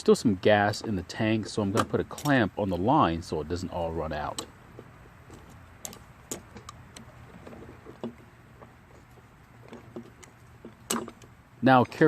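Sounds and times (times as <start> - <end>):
hand tools clicking on metal parts: 0.7 - 2.4.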